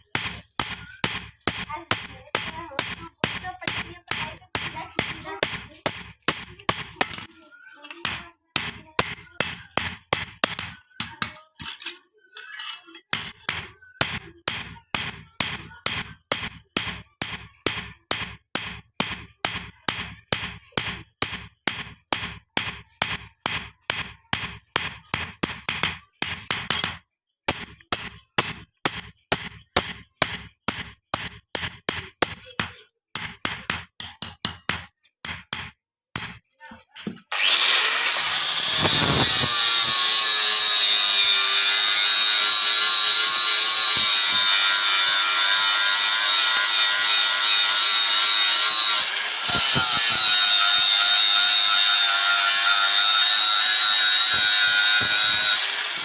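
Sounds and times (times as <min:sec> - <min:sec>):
hammer striking steel on anvil: 0:00.1 - 0:07.3, 0:08.0 - 0:36.4.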